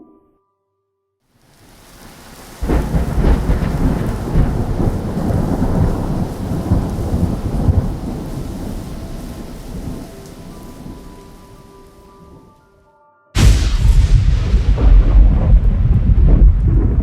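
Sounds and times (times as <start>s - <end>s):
fire roaring and crackling: 1.4s - 10.0s, 13.4s - 17.0s
low rumbling burst of flame: 13.4s - 17.0s.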